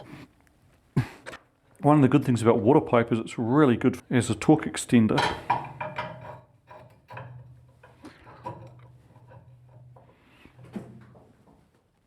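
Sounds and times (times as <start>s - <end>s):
metallic clicks and knocks: 5.1s - 11.7s.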